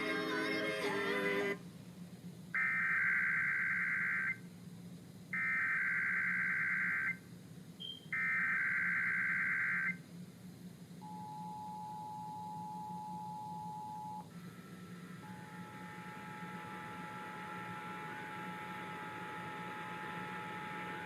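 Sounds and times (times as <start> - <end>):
two-tone attention signal: 15.2 - 21.0.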